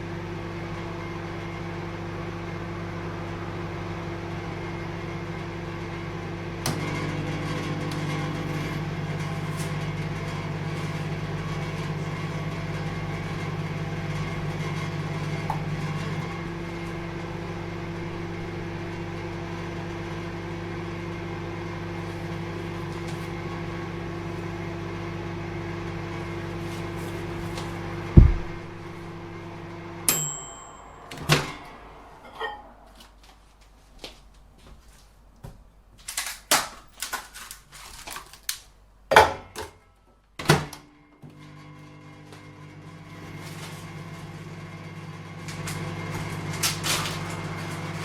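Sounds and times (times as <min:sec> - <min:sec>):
microwave oven humming: 0:00.0 - 0:33.4, 0:39.4 - 0:48.0
loud low thump: 0:28.1 - 0:28.9
brief high tone: 0:30.0 - 0:33.3.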